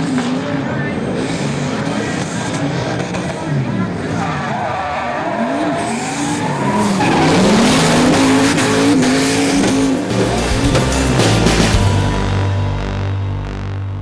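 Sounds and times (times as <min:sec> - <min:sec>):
car engine revving: 0:00.0 - 0:14.0
tyres squealing: 0:04.2 - 0:12.2
music: 0:07.5 - 0:14.0.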